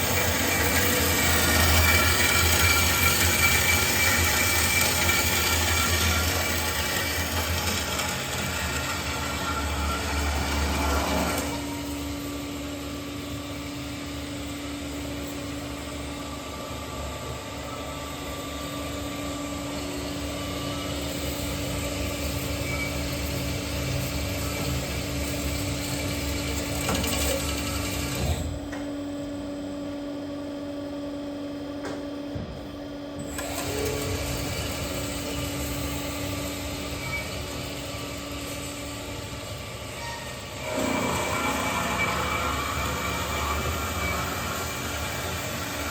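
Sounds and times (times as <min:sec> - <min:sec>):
band saw machine hum: 0:00.0 - 0:28.5, 0:33.3 - 0:45.9.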